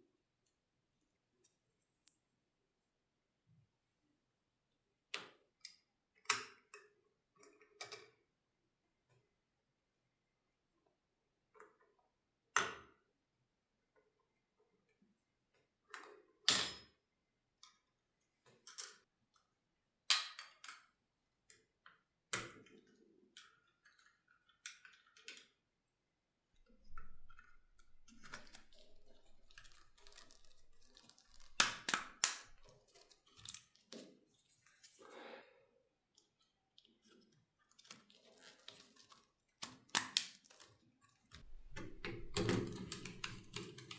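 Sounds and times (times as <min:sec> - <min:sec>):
rustling and scraping: 0:26.6 - 0:35.0, 0:41.4 - 0:43.9.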